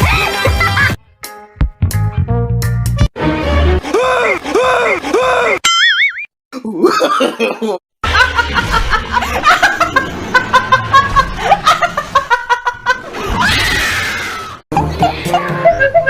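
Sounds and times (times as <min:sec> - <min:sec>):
people laughing hard: 0:06.8 - 0:13.5, 0:14.7 - 0:16.0.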